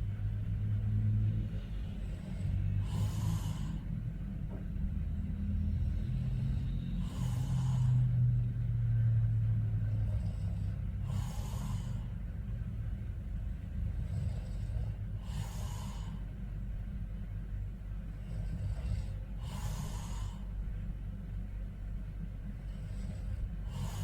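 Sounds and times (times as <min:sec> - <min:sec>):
breathy hiss: 0:01.8 - 0:04.0, 0:05.4 - 0:08.3, 0:09.8 - 0:12.2, 0:13.9 - 0:16.4, 0:18.0 - 0:20.7, 0:22.5 - 0:24.0
man snoring: 0:02.0 - 0:03.9, 0:05.4 - 0:08.3, 0:09.7 - 0:12.2, 0:13.8 - 0:16.2, 0:18.1 - 0:20.5, 0:22.6 - 0:24.0.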